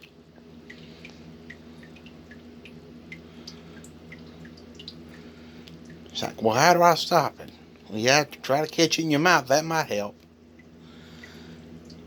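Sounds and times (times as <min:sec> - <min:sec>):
faucet dripping: 0:00.0 - 0:07.6, 0:10.2 - 0:12.0
low steady hum: 0:00.0 - 0:12.0.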